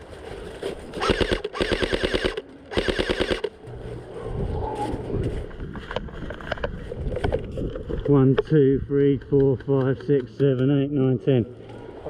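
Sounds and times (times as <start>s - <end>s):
airsoft rifle full auto bursts: 1.0s - 3.5s.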